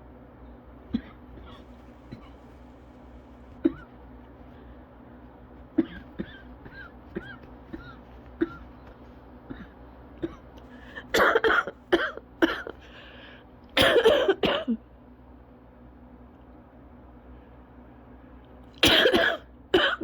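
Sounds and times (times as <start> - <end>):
person coughing: 0.9 - 2.4, 3.6 - 4.0, 5.8 - 8.8, 9.5 - 12.8, 13.8 - 14.8, 18.8 - 20.0.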